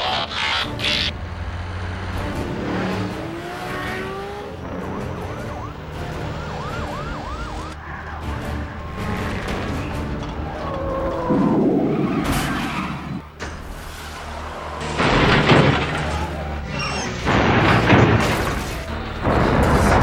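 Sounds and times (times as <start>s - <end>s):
vehicle engines rumbling: 0.0s - 20.0s
siren-like wails: 5.1s - 13.2s
rising whines: 5.2s - 13.3s.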